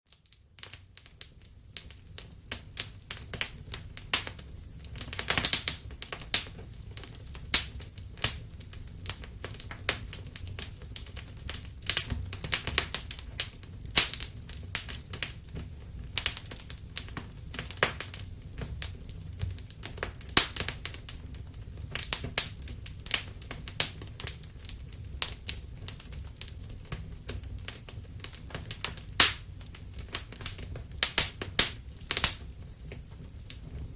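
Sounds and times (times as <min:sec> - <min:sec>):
wood fire crackling: 0:00.1 - 0:33.9.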